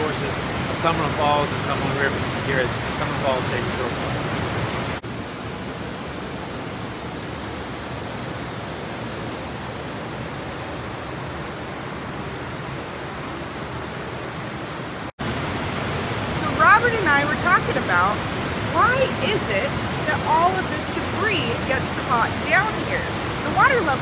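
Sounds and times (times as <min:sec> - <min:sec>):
waterfall rushing: 0:00.0 - 0:07.0, 0:15.2 - 0:24.0.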